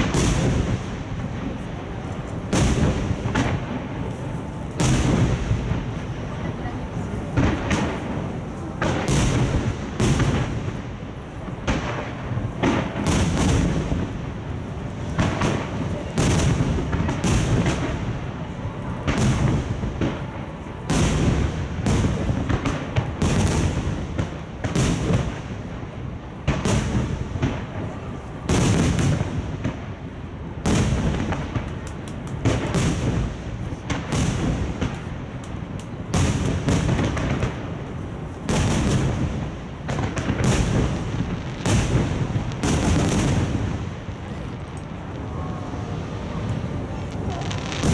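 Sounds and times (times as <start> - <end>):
firework crackle: 0.0 - 47.9.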